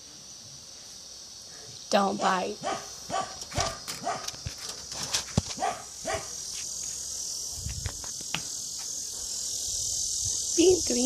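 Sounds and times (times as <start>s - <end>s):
insects buzzing: 0.0s - 11.0s
dog yipping: 2.6s - 4.3s, 5.6s - 6.3s.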